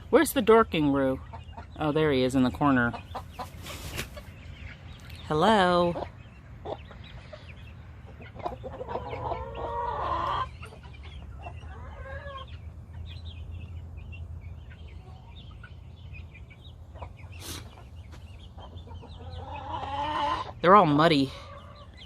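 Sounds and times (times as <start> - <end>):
chickens clucking: 0.0 - 22.0
chicken drawn-out call: 19.0 - 20.6.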